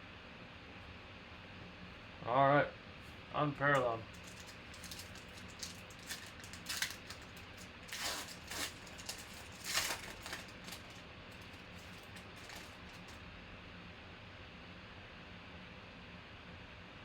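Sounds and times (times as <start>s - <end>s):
wrapper crinkling and ripping: 4.0s - 13.2s.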